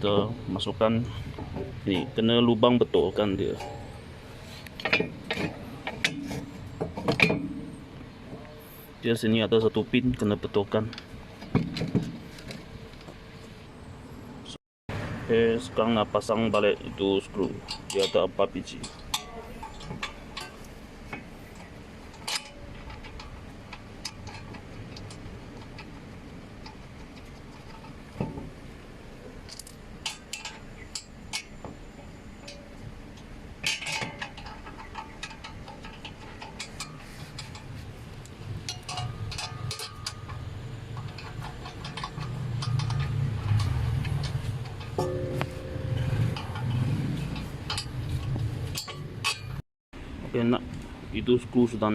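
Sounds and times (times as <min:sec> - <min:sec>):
metallic clinks of tools and bolts: 0:33.6 - 0:37.7, 0:38.6 - 0:49.6
low hum: 0:34.3 - 0:49.6.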